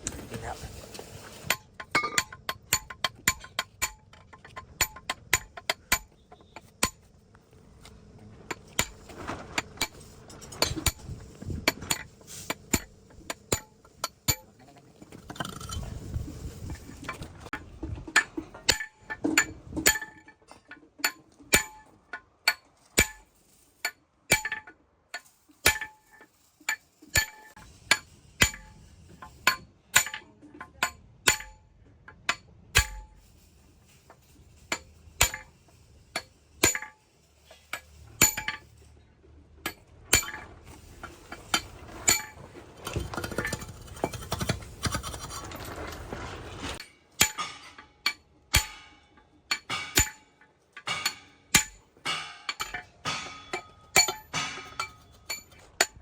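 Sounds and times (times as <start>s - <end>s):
metal tools clinking: 0.0s - 7.0s, 39.6s - 56.0s
handling and scraping noise: 0.0s - 56.0s.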